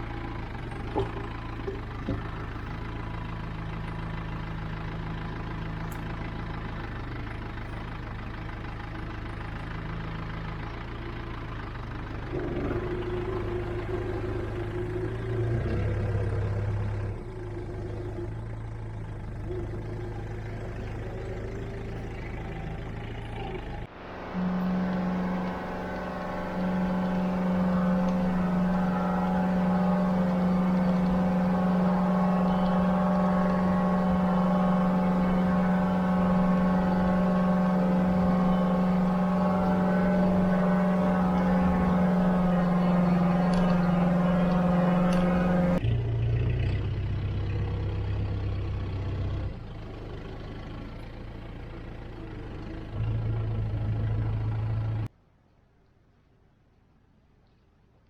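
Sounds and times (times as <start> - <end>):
sawmill engine running: 0.0 - 55.1.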